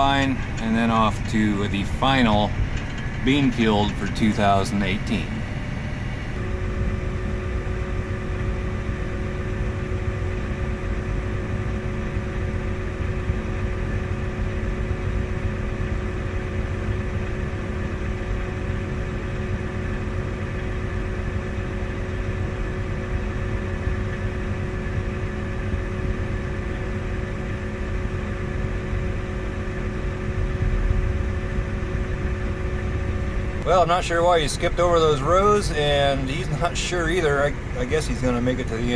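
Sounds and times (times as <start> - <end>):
constant whine: 0.0 - 38.9
machinery engine droning: 0.0 - 38.9.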